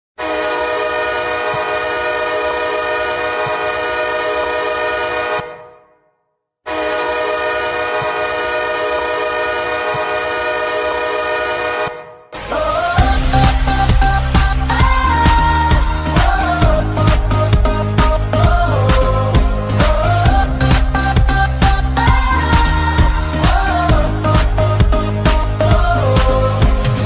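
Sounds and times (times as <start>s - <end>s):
hockey goal horn blasts: 0.2s - 6.0s, 6.7s - 12.2s
song playing: 12.4s - 27.0s.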